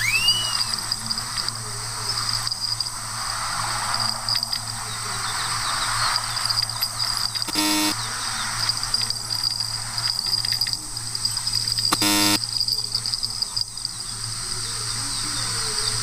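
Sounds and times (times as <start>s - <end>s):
high even hiss: 0.0s - 16.0s
short horn toot: 7.5s - 8.0s, 11.9s - 12.4s.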